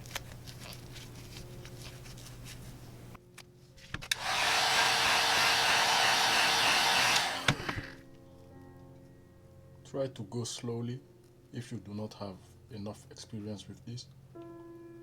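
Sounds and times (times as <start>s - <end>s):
heat gun blowing hot air: 4.1s - 8.0s.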